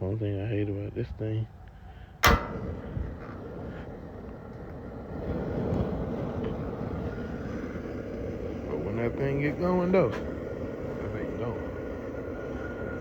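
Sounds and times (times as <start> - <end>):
heater rushing noise: 0.0 - 13.0.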